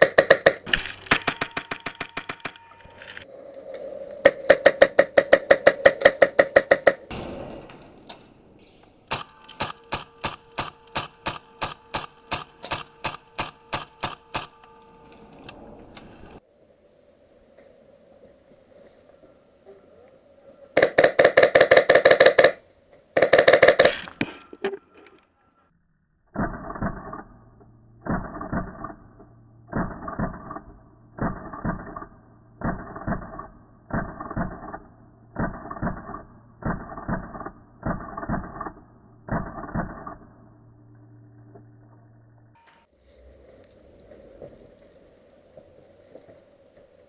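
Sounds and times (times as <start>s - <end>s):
airsoft gun firing bursts: 0.0s - 2.6s, 4.5s - 7.0s, 20.8s - 22.6s, 23.2s - 24.1s
low hum: 0.0s - 20.7s, 22.6s - 47.0s.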